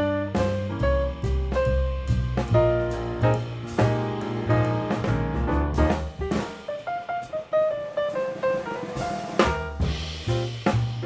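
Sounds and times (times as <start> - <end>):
jazz plucked notes descending: 0.0 - 6.8.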